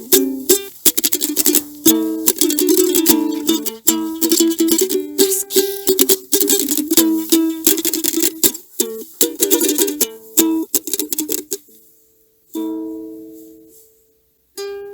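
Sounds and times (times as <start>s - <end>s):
strummed acoustic string chords: 0.0s - 11.8s.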